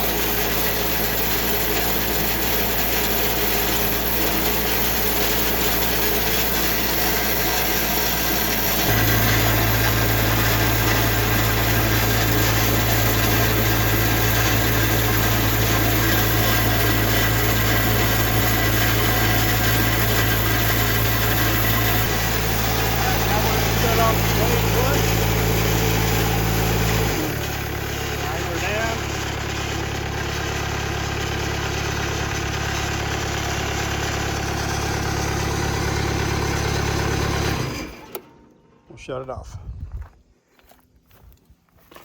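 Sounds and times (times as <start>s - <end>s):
band blade spinning: 0.0s - 29.0s
sawmill diesel engine running: 0.0s - 39.2s.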